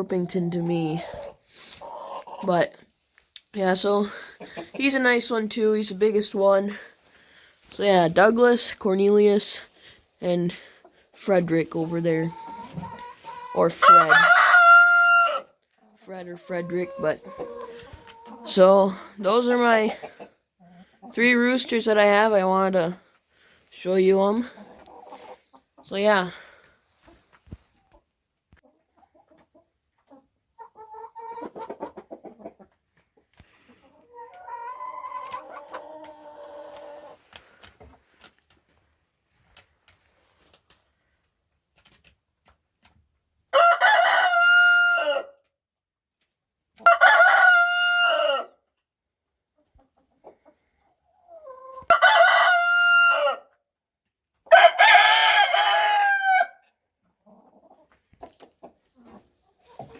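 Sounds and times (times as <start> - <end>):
chicken clucking: 0.1 - 3.4, 4.0 - 5.4, 10.4 - 22.5, 24.2 - 26.3, 27.0 - 40.9, 46.2 - 53.3, 57.0 - 59.9
rooster crowing: 54.5 - 56.6.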